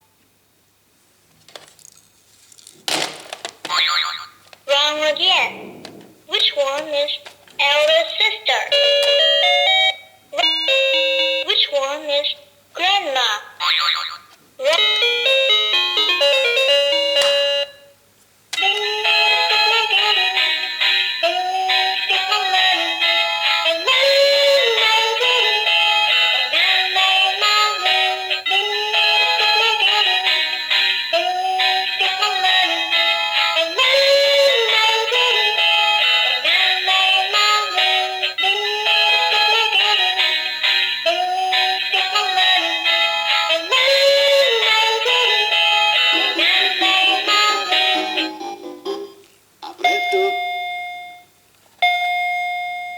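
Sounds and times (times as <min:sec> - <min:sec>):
toy telephone electronic beeps: 0:49.8 - 0:52.9.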